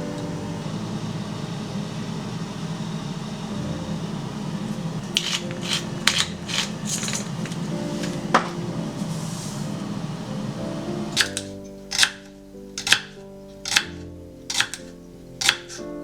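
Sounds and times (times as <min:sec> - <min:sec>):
steady mechanical hum: 0:00.0 - 0:11.6.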